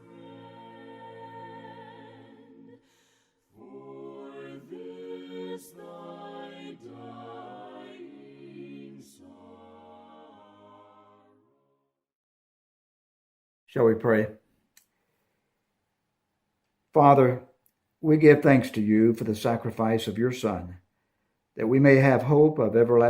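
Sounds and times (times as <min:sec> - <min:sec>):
choir singing a hymn: 0:00.0 - 0:11.7.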